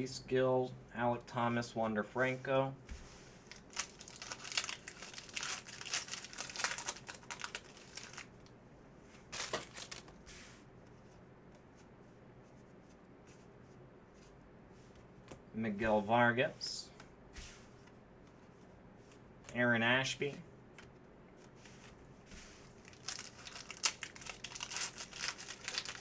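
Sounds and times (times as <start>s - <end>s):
wrapper tearing and crinkling: 3.5s - 8.4s, 9.3s - 10.1s, 22.6s - 26.0s
cards being handled: 20.8s - 26.0s.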